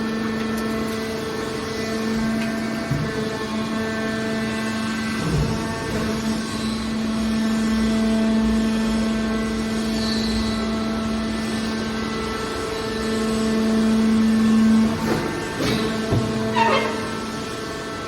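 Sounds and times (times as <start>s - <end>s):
hydraulic machine hum: 0.0s - 18.0s.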